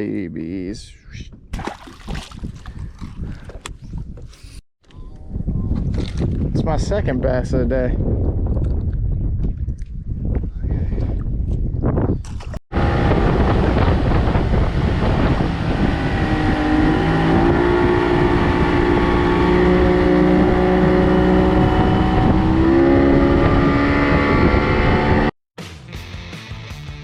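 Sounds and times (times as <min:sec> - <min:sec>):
wind on microphone: 0:01.0 - 0:25.3
outboard motor running: 0:12.7 - 0:25.0.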